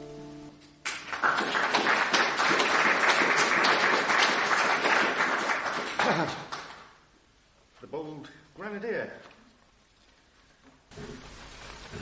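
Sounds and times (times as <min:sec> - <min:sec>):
acoustic guitar chord: 0:00.0 - 0:00.9
audience clapping: 0:00.8 - 0:07.0.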